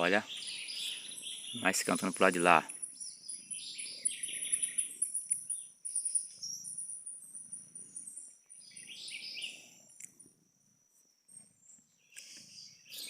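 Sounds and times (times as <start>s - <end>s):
high-pitched insect trill: 0.0s - 13.0s
wren singing: 0.0s - 13.0s.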